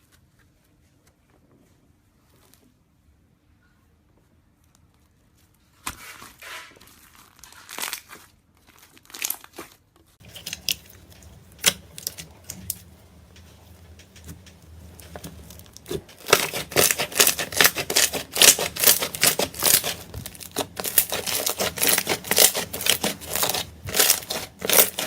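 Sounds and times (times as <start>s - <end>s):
slime crackling and popping: 10.3s - 25.0s.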